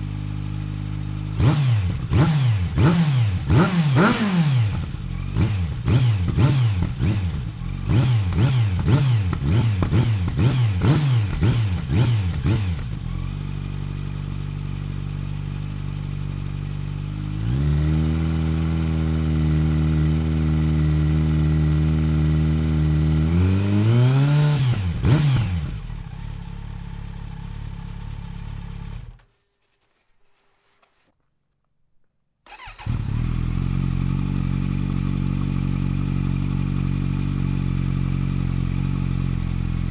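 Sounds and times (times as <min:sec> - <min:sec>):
motorcycle engine revving: 0:00.0 - 0:29.2, 0:32.5 - 0:39.9.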